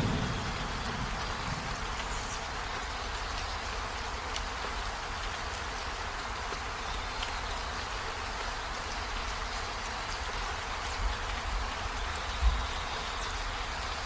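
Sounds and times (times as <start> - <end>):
steady rain falling: 0.0 - 14.0.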